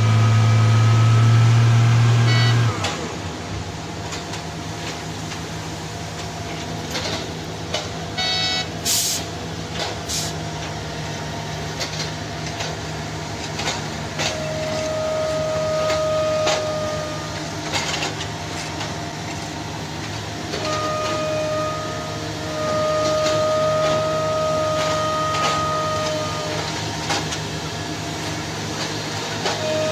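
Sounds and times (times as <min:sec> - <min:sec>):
diesel machinery running: 0:00.0 - 0:29.9
steady whine: 0:02.2 - 0:29.9
metal clanks and knocks: 0:13.4 - 0:15.1, 0:15.7 - 0:21.2.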